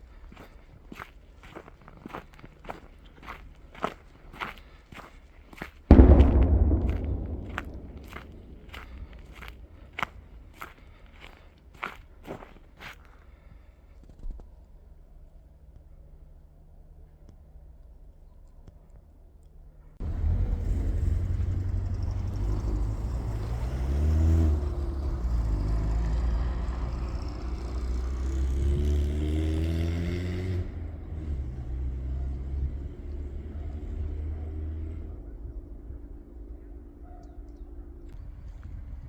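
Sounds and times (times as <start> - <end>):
vehicle engine revving: 20.0 - 35.3.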